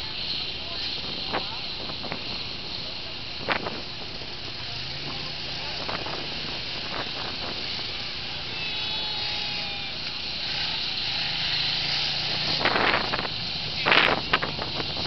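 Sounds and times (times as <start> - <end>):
heavy vehicle engine running: 0.0 - 15.0
wind buffeting microphone: 0.6 - 8.5, 11.6 - 15.0.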